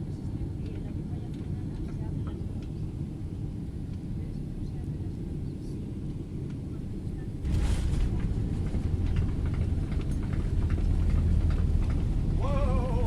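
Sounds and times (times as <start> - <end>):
low roar of wheels rolling: 7.4 - 13.0.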